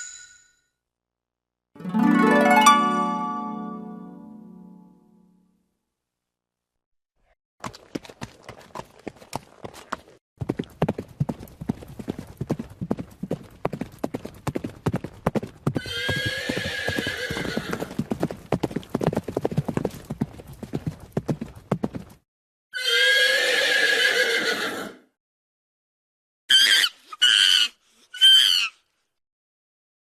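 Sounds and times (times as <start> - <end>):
horse hooves clip-clopping: 7.6 - 22.2
horse whinnying: 15.8 - 18.0, 22.8 - 25.1, 26.5 - 28.8.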